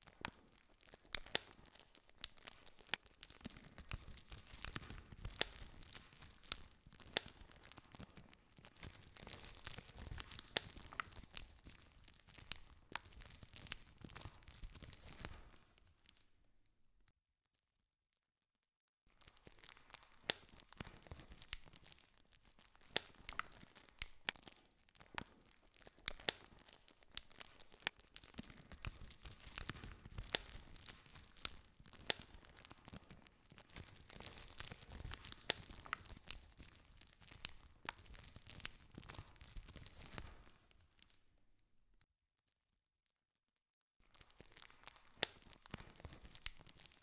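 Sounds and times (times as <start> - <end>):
campfire crackling and popping: 0.0 - 16.2, 19.2 - 41.1, 44.1 - 47.0.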